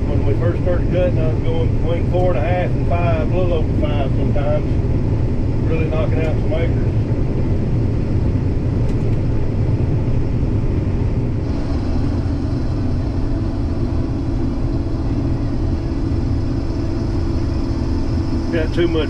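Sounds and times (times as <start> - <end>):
combine harvester rumbling: 0.0 - 19.0.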